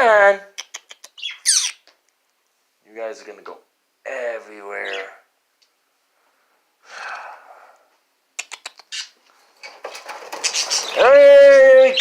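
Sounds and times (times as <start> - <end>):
soft breathy sound: 6.0 - 8.1
birds fluttering wings: 9.5 - 11.6.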